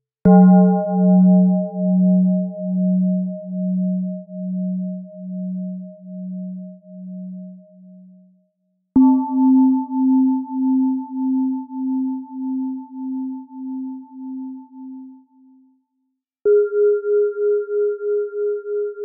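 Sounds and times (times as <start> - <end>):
low bell tone: 0.3 - 8.1, 16.5 - 19.0.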